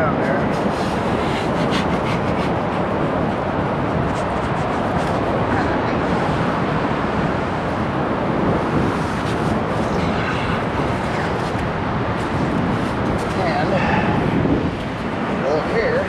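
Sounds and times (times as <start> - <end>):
ocean surf: 0.0 - 16.0
wind on microphone: 0.0 - 16.0.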